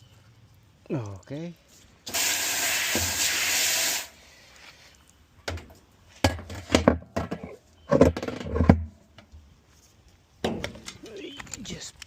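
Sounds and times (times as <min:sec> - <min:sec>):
spray hiss: 0:02.1 - 0:04.2.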